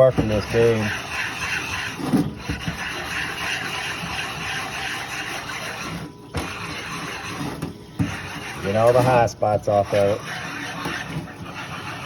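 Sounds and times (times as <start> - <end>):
metal scraping on stone: 0.0 - 12.0.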